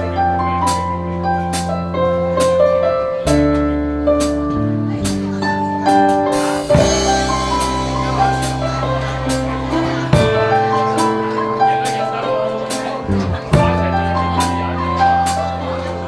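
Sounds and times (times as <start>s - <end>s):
keyboard melody: 0.0s - 16.0s
sustained bass notes: 0.0s - 16.0s
steady drum beat: 5.0s - 12.1s, 12.7s - 15.6s.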